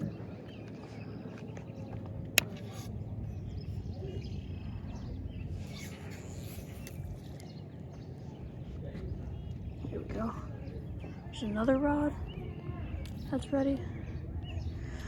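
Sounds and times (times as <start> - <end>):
outdoor background noise: 0.0 - 15.0
sharp click: 2.3 - 2.9.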